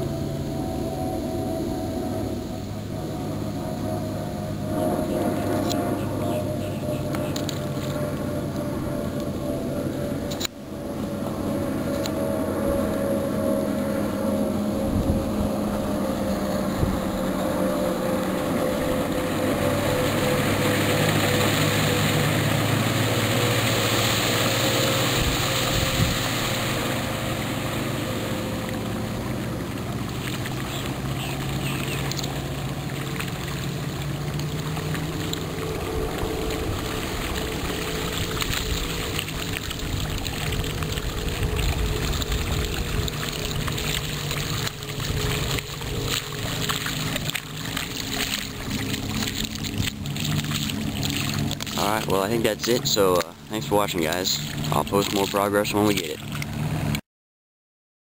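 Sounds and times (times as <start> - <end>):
outboard motor running: 0.0 - 57.0
water hissing: 19.2 - 53.1.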